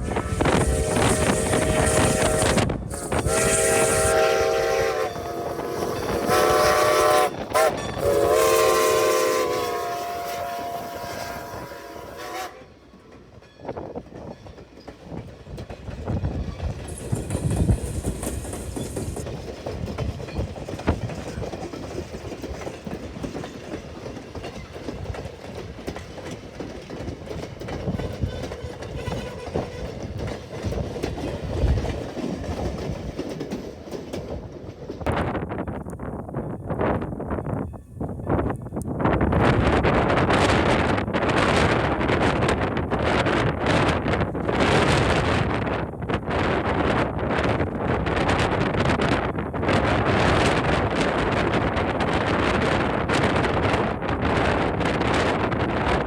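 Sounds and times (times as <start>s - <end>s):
train whistle chord blasts: 0.0s - 12.8s
train rumbling past: 0.0s - 56.0s
wheels clacking over rail joints: 12.6s - 35.2s.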